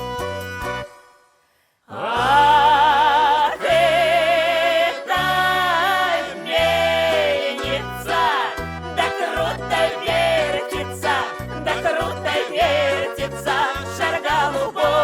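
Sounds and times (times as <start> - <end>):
woman singing with vibrato: 1.9 - 15.0
backing track with pulsing bass: 5.2 - 15.0.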